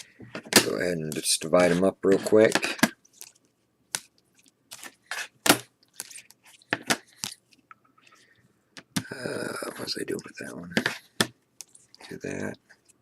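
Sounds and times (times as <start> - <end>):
trading cards clicking and scraping: 0.0 - 8.2.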